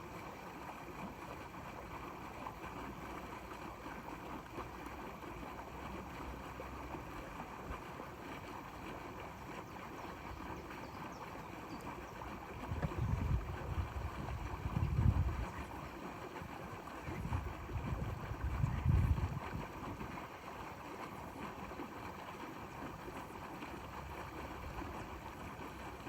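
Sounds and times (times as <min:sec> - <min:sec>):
water noise: 0:00.0 - 0:26.0
wind: 0:00.0 - 0:26.0
wind buffeting the microphone: 0:12.6 - 0:15.9, 0:17.0 - 0:20.2.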